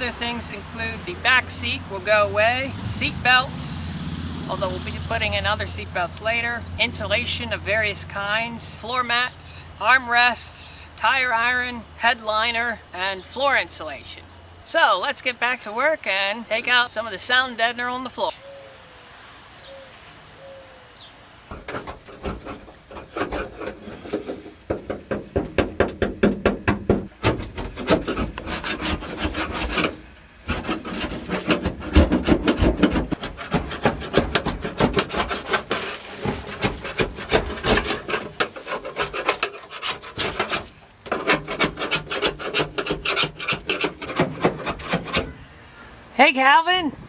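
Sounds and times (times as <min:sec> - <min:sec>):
rapid scraping strokes: 0:00.0 - 0:09.0, 0:21.5 - 0:25.2, 0:27.2 - 0:45.4.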